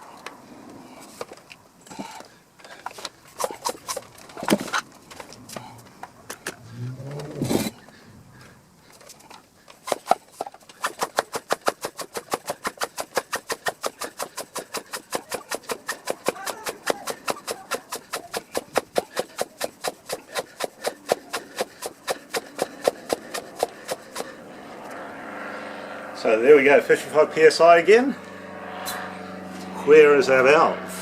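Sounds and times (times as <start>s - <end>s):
bicycle pump strokes: 1.0s - 5.7s, 8.8s - 25.0s.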